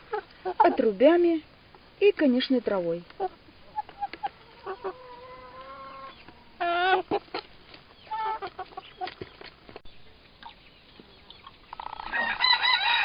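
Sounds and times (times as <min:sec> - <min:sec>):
chickens clucking and calling: 0:00.0 - 0:01.3, 0:03.0 - 0:13.0
chicken squawk: 0:03.2 - 0:09.1, 0:11.7 - 0:13.0.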